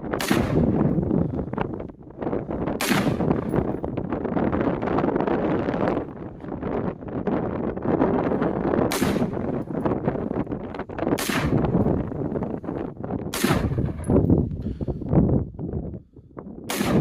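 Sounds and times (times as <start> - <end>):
wind noise on microphone: 0.0 - 17.0
rifle shots: 0.1 - 1.0, 2.8 - 3.8, 8.8 - 9.9, 11.1 - 12.0, 13.3 - 14.3, 16.7 - 17.0.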